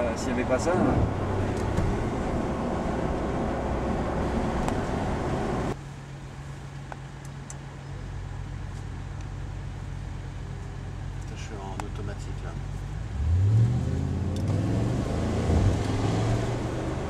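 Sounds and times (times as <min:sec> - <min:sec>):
car engine running: 0:00.0 - 0:05.8
road noise: 0:00.0 - 0:17.0.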